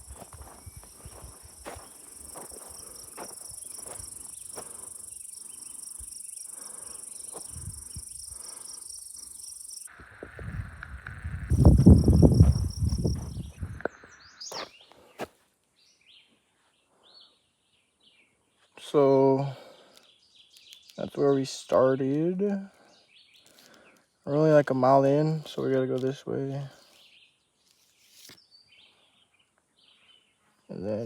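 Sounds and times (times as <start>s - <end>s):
footsteps on a trail: 0.0s - 8.8s, 10.2s - 15.5s
insects trilling: 0.0s - 14.7s.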